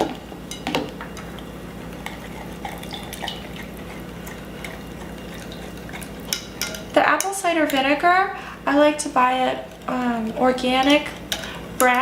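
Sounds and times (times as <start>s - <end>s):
low steady hum: 0.0s - 12.0s
whisk clinking and scraping bowl: 1.2s - 8.0s, 9.7s - 12.0s.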